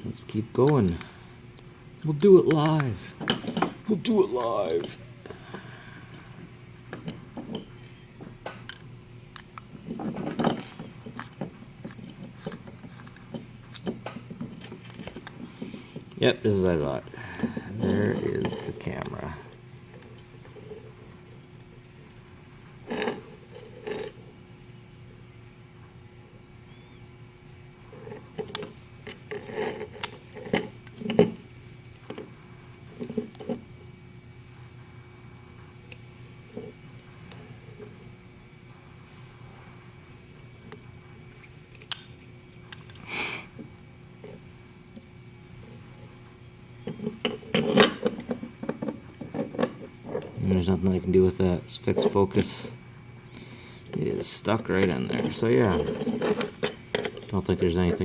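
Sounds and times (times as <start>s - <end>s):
hands clicking plastic parts: 2.1s - 2.9s
parts clattering: 9.6s - 16.1s, 53.8s - 58.0s.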